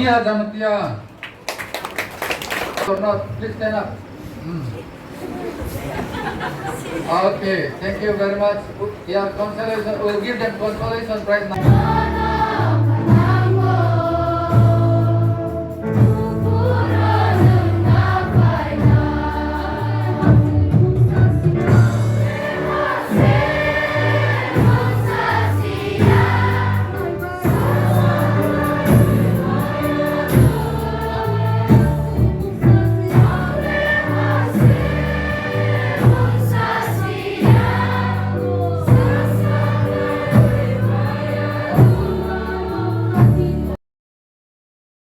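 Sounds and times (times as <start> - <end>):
choir singing over bass and beat: 11.6 - 43.8.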